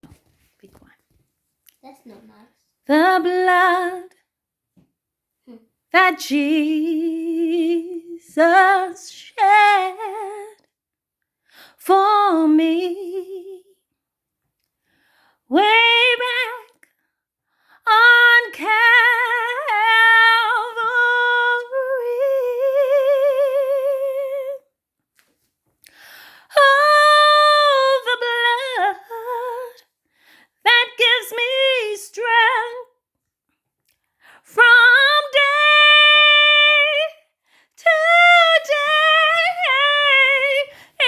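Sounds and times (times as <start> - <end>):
woman singing a hymn: 2.8 - 4.2, 5.9 - 10.6, 11.8 - 13.8, 15.5 - 16.8, 17.8 - 24.7, 26.4 - 29.9, 30.6 - 32.9, 34.4 - 37.2, 37.8 - 41.0.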